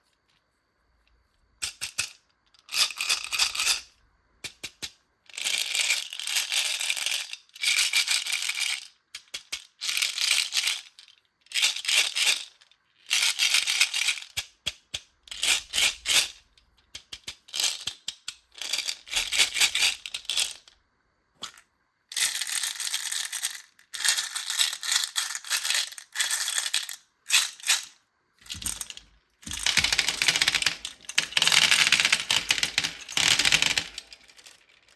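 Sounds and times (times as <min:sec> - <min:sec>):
micro beads pouring and rattling: 0:22.2 - 0:34.9.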